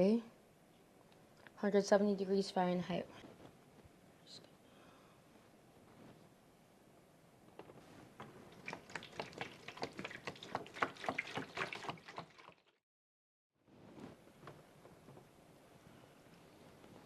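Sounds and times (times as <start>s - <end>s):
liquid bubbling: 8.2s - 12.8s.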